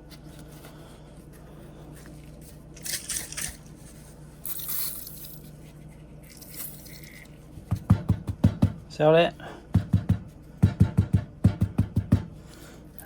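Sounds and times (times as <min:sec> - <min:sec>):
rustling and scraping of scrubbing: 0:00.0 - 0:07.9
steady low hum: 0:00.0 - 0:13.0.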